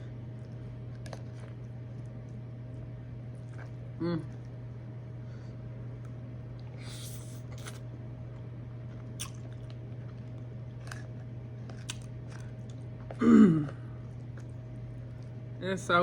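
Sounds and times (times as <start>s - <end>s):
steady low hum: 0.0s - 16.0s
quiet chewing: 0.2s - 4.8s, 5.9s - 15.5s
wet mouth clicks: 9.2s - 9.5s.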